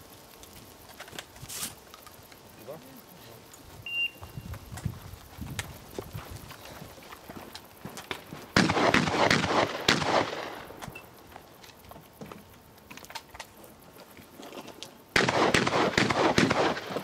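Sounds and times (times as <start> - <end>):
shotgun rapid shots: 8.6 - 10.7, 15.2 - 17.0.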